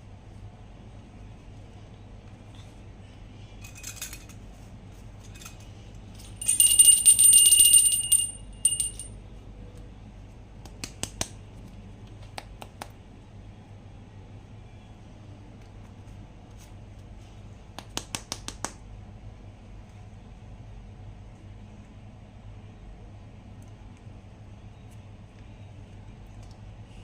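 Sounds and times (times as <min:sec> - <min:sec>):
rattling jingle with ringing tones: 0:06.2 - 0:09.1.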